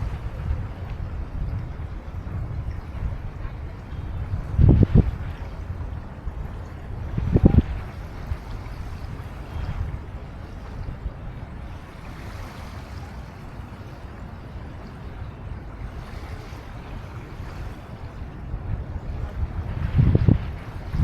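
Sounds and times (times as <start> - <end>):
river water lapping: 0.0 - 21.0
wind on microphone: 0.0 - 21.0.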